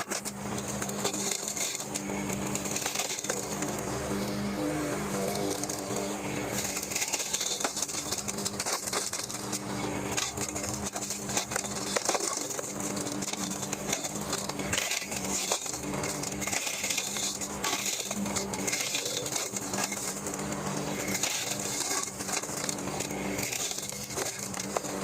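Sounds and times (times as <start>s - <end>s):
lawnmower engine running: 0.0s - 25.0s
wood cracking and clattering: 6.5s - 25.0s.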